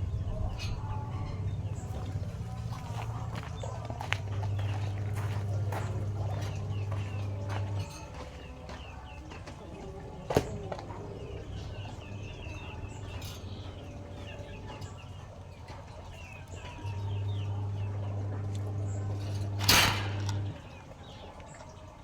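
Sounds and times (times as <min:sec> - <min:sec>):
chicks peeping: 0:00.0 - 0:22.0
low hum: 0:10.0 - 0:21.4.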